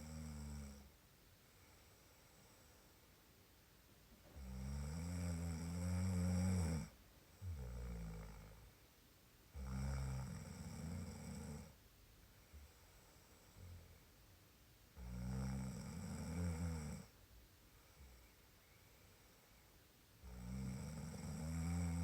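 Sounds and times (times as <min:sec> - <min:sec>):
person snoring: 0:09.6 - 0:11.7, 0:15.0 - 0:17.1, 0:20.2 - 0:22.0.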